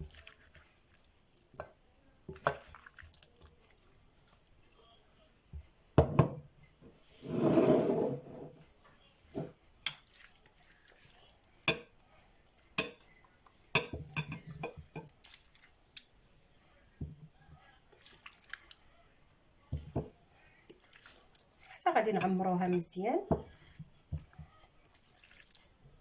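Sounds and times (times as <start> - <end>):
wet squishing and dripping: 0.0 - 1.7, 2.3 - 4.8, 9.8 - 11.7, 15.0 - 16.1, 17.2 - 19.0, 20.4 - 21.8, 23.6 - 25.8.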